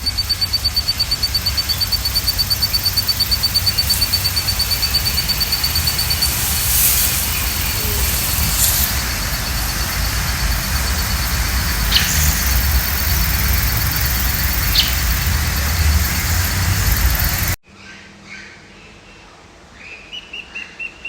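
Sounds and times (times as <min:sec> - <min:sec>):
short high chirps: 0:00.8 - 0:15.1
low rumble: 0:01.3 - 0:17.6.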